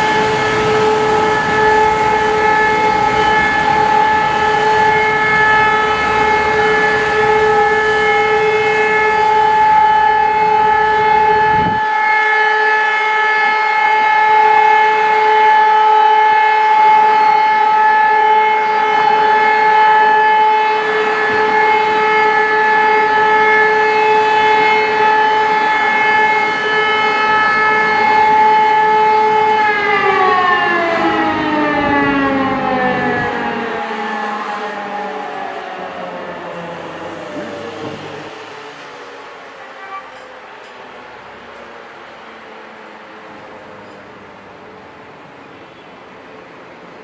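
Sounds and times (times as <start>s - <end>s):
steady-tone warning siren: 0.0s - 47.0s.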